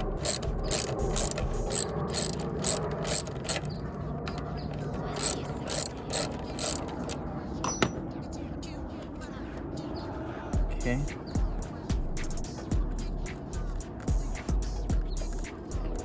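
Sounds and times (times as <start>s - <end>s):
ratchet wrench clicking: 0.0s - 3.7s, 5.1s - 7.2s.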